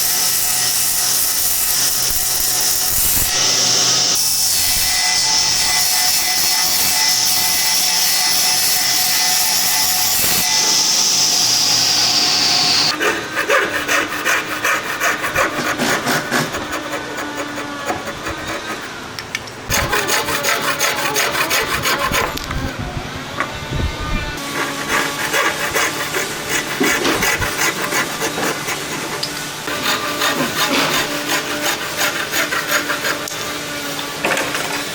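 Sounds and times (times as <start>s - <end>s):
power tool on wood: 0.0s - 13.0s
rhythmic scraping on wood: 24.4s - 34.9s.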